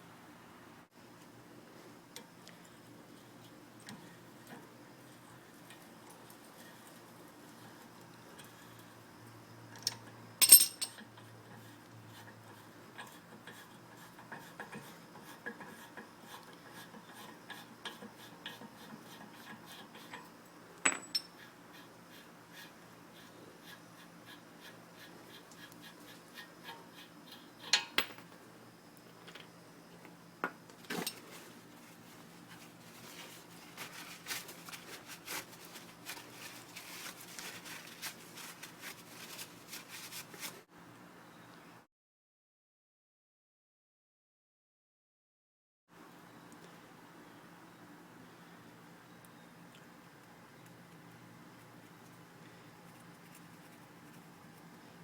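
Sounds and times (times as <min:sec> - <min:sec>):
sharp metallic clinks: 0:10.4 - 0:11.0.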